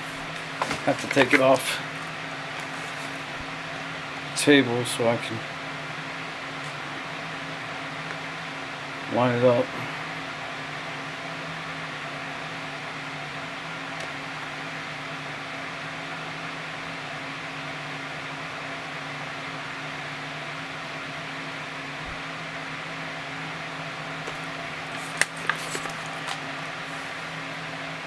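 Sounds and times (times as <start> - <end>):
room hum with low drone: 0.0 - 28.0.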